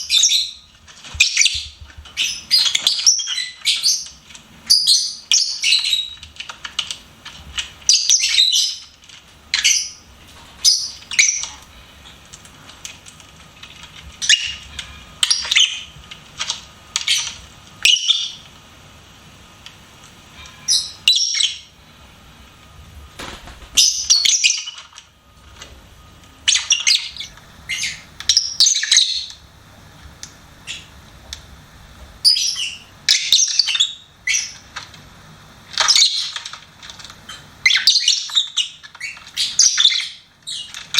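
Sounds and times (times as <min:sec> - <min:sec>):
lovebirds chirping: 0:00.0 - 0:06.3, 0:07.5 - 0:12.2, 0:14.2 - 0:18.6, 0:20.3 - 0:21.8, 0:23.5 - 0:25.0, 0:26.4 - 0:29.5, 0:30.2 - 0:31.0, 0:32.2 - 0:34.7, 0:37.2 - 0:40.9.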